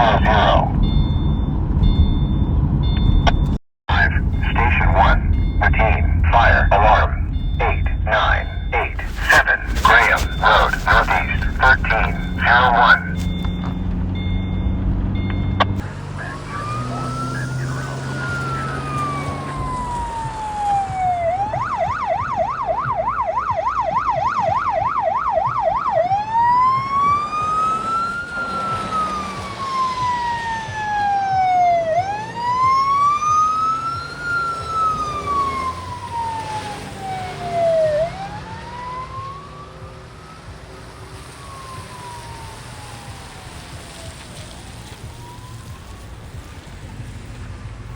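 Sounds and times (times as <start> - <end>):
electronic siren wailing and yelping: 0.0 - 2.5, 3.3 - 14.6, 15.2 - 40.4
steady low hum: 0.0 - 16.6.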